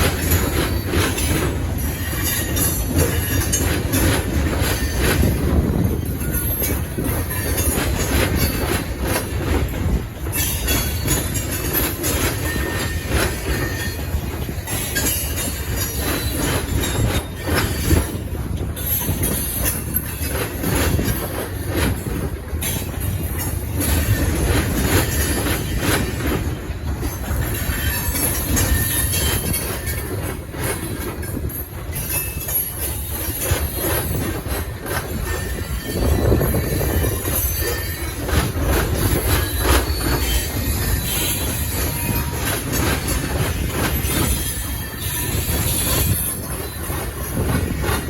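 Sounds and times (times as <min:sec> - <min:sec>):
freight train rumble: 0:00.0 - 0:48.0
wheel clicks over rail joints: 0:00.0 - 0:48.0
wheel squeal: 0:27.0 - 0:48.0.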